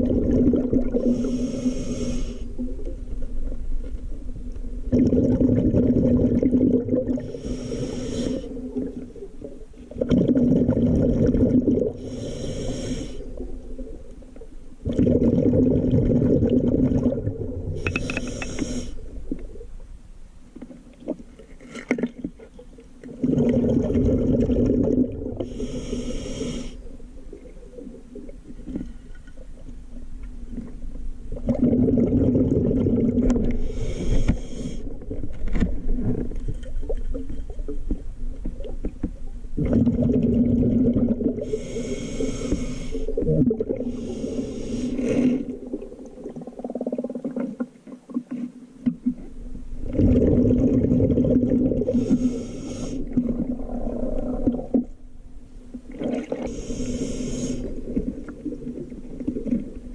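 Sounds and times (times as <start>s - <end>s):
exhaled bubbles rumbling underwater: 0.0s - 20.0s, 22.1s - 59.9s
regulator hissing inhale: 1.0s - 2.6s, 7.2s - 8.6s, 12.0s - 13.4s, 17.8s - 19.2s, 25.4s - 26.9s, 33.5s - 35.0s, 41.4s - 43.2s, 43.8s - 45.5s, 51.9s - 53.2s, 56.5s - 58.0s.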